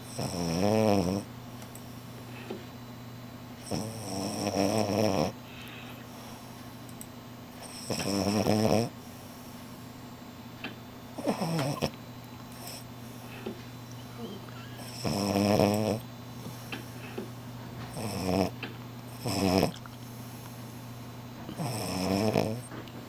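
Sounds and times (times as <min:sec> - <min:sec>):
dog snoring: 0:00.0 - 0:01.3, 0:03.6 - 0:06.4, 0:07.5 - 0:09.5, 0:11.2 - 0:12.9, 0:14.2 - 0:17.1, 0:17.9 - 0:19.9, 0:21.5 - 0:22.8
steady low hum: 0:00.0 - 0:23.0.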